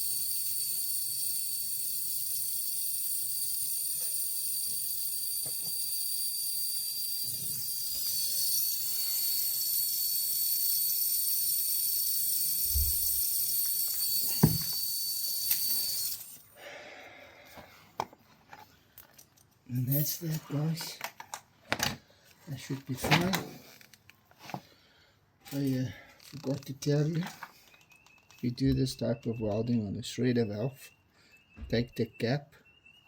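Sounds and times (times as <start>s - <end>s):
torch flame hissing and whistling: 0.0s - 16.4s.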